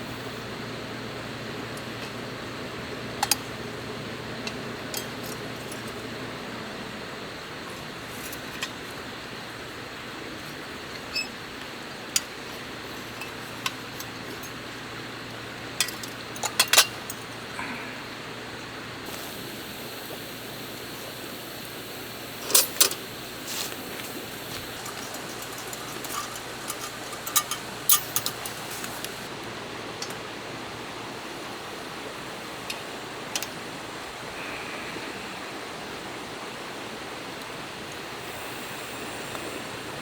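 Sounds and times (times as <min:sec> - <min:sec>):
steady background hiss: 0:00.0 - 0:40.0
cookware and utensils clinking: 0:24.1 - 0:29.3.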